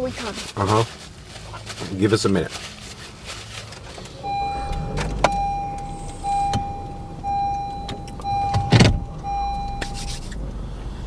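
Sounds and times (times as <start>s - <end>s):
low engine rumble: 0.0s - 11.0s
car warning chime: 4.1s - 10.6s
heavy thump: 4.2s - 10.0s.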